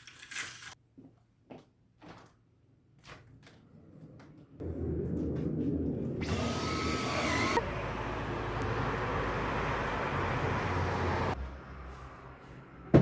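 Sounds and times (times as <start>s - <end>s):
appliance motor whining rush: 6.2s - 11.3s.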